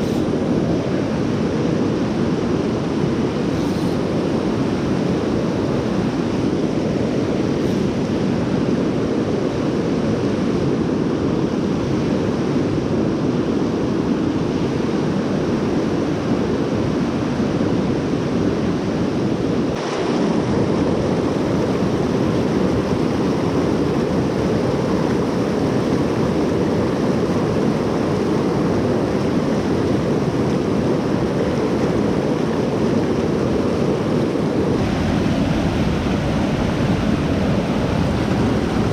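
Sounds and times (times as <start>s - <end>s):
creek rushing: 19.6s - 38.9s.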